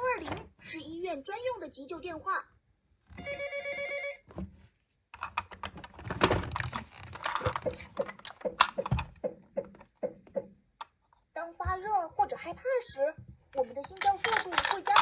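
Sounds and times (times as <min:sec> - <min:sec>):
toy car clattering down a slope: 0:13.6 - 0:15.0.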